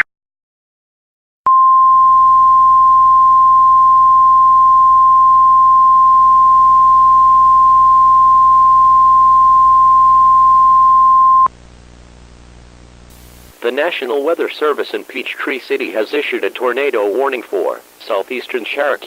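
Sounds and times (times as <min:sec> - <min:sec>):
steady emergency alert tone: 0:01.9 - 0:11.5.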